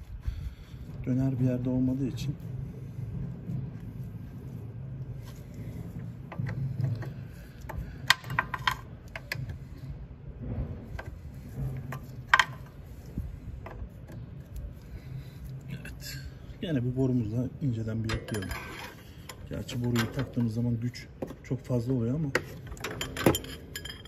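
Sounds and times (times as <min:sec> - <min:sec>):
metal tools clinking: 0:18.0 - 0:20.8, 0:22.3 - 0:24.0.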